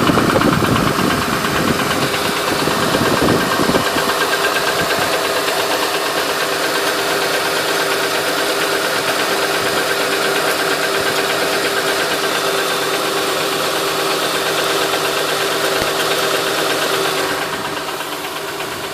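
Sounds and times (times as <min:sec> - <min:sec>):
car engine running: 0:00.0 - 0:18.9
fast even engine ticking: 0:00.0 - 0:18.9.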